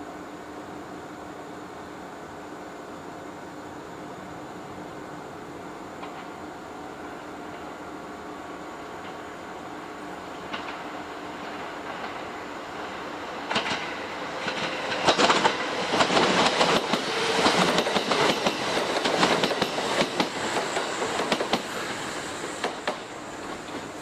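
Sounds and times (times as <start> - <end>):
train wheels clattering over rails: 10.4 - 24.0
electric train running: 10.5 - 24.0.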